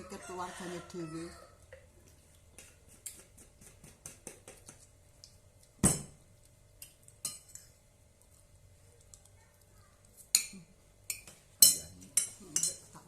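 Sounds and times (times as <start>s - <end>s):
cutlery clinking on a plate: 10.3s - 12.9s.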